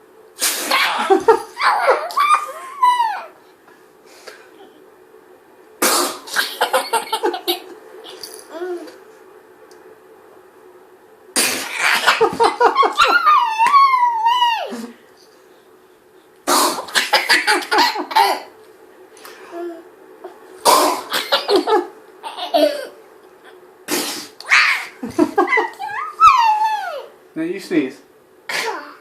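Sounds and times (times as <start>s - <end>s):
baby laughing: 0.7s - 3.4s, 6.4s - 7.7s, 11.7s - 14.8s
baby squealing: 13.0s - 14.7s, 25.9s - 27.1s
man making pretend sneezes: 16.5s - 17.0s.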